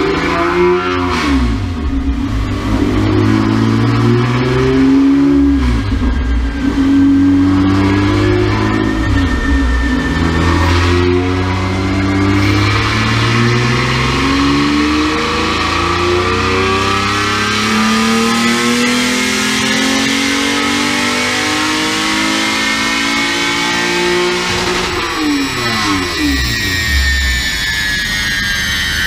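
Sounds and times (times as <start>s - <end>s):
car engine pulling under load: 0.0s - 28.0s.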